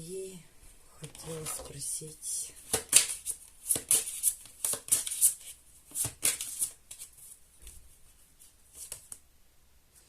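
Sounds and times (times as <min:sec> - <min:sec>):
cards being shuffled: 0:02.6 - 0:07.8, 0:08.7 - 0:09.2.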